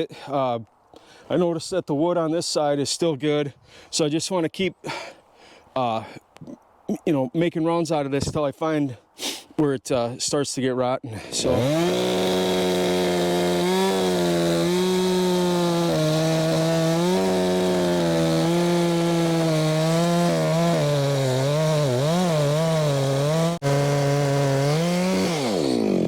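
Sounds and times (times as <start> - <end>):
chainsaw cutting log: 11.3 - 26.0.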